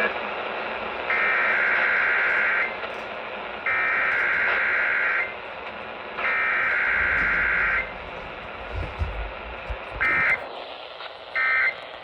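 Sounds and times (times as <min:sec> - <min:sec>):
radio hiss: 0:00.0 - 0:12.0
low rumble: 0:06.6 - 0:10.4.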